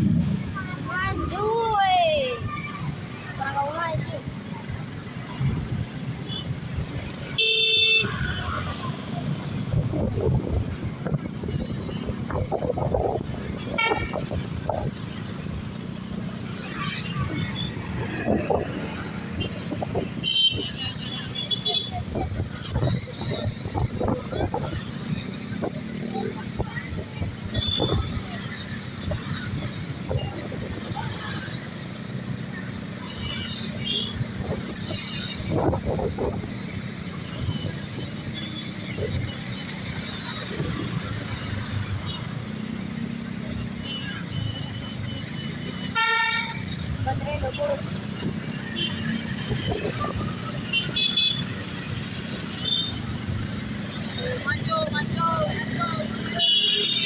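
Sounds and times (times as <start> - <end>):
road traffic rumble: 0.0 - 57.0
vehicle horn toot: 7.4 - 8.2, 13.8 - 14.2, 45.9 - 46.7, 56.4 - 57.0.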